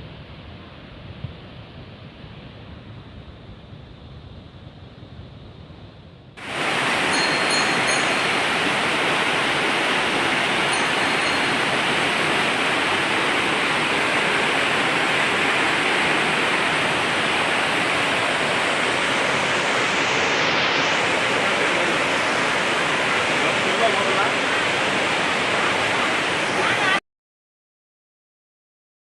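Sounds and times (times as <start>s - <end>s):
waterfall rushing: 6.4s - 27.0s.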